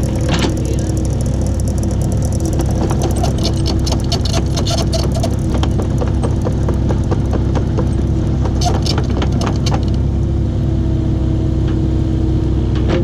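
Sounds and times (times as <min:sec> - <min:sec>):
metallic clicks and clanks: 0:00.0 - 0:10.1
excavator diesel engine running: 0:00.0 - 0:13.0.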